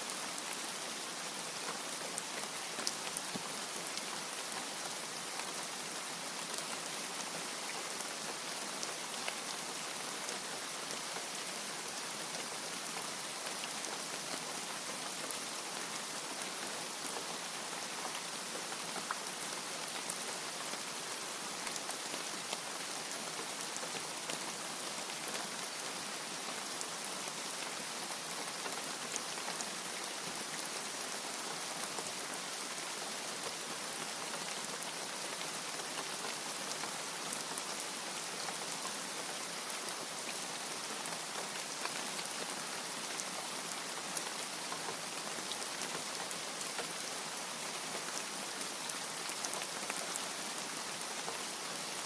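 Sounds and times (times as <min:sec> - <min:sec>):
steady rain falling: 0:00.0 - 0:52.0.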